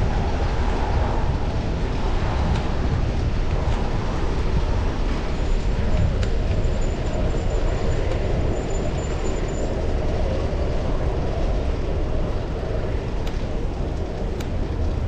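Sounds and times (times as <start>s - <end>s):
road and traffic noise: 0.0s - 15.0s
wind rush on microphone: 0.0s - 15.0s.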